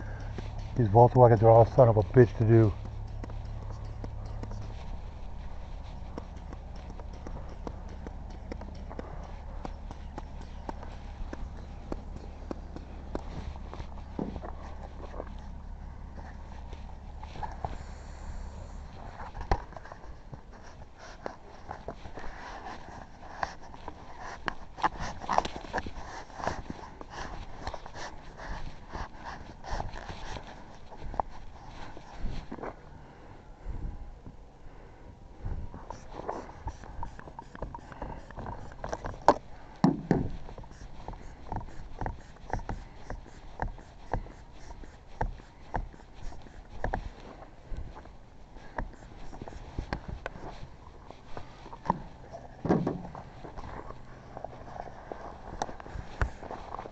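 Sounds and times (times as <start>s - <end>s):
thump: 52.6s - 53.1s.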